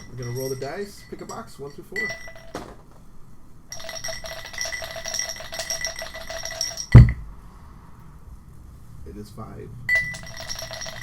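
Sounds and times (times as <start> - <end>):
loud thump: 6.9 - 7.3.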